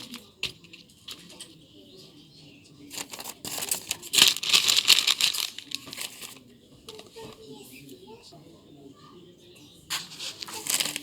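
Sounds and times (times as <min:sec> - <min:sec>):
wrapping paper crinkling and tearing: 0:00.0 - 0:00.3, 0:02.9 - 0:06.4, 0:09.9 - 0:11.0.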